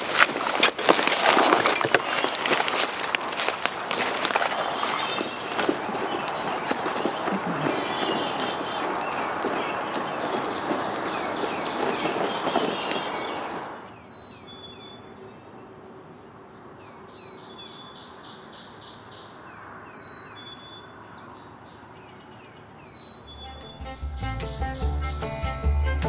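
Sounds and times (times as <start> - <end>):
loud rustling noise: 0.0 - 6.9
songbirds singing: 0.0 - 25.2.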